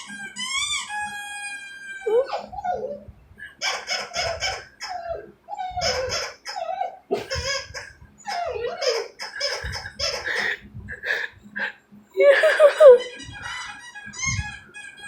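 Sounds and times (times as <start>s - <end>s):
squeaky toy squeaks: 0.0s - 3.0s, 3.6s - 10.6s, 12.4s - 15.0s
dog whining and howling: 0.0s - 7.1s, 8.2s - 9.6s.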